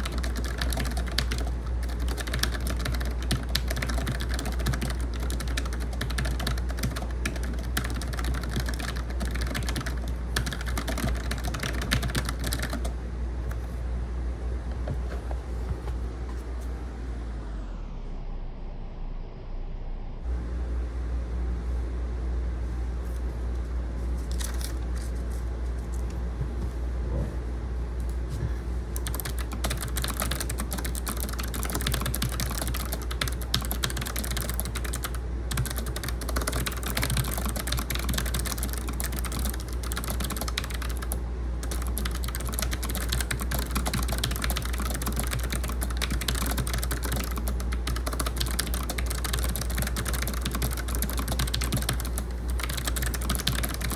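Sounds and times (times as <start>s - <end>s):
fast typing on clicky keyboard: 0.0s - 12.9s, 29.0s - 53.9s
air conditioner hum: 0.0s - 53.9s.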